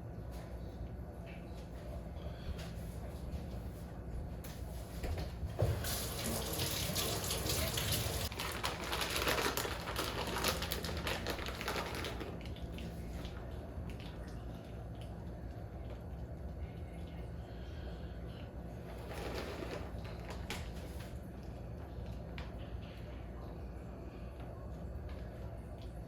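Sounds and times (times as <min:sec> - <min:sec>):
water running from tap into sink: 0:05.6 - 0:08.3.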